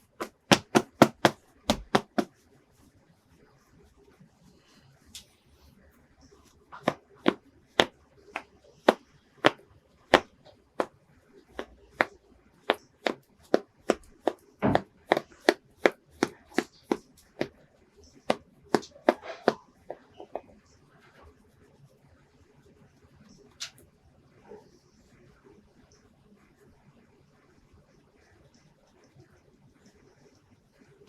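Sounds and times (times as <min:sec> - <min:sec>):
taps and clicks on hard surface: 0:00.0 - 0:02.3
heavy knock: 0:00.1 - 0:02.3.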